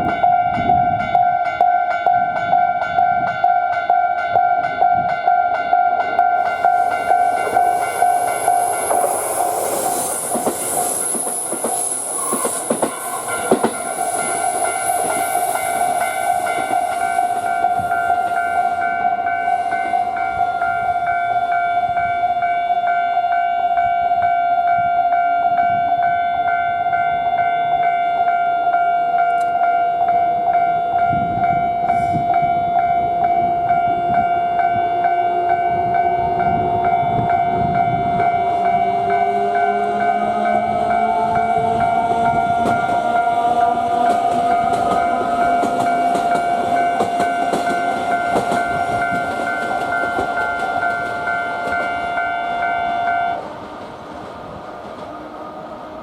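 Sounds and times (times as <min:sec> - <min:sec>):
low train rumble: 0:00.0 - 0:56.0
level crossing bell ringing: 0:00.1 - 0:11.2, 0:12.9 - 0:53.4
train wheels clacking: 0:06.1 - 0:21.0, 0:37.1 - 0:55.4
high hiss: 0:06.5 - 0:18.8.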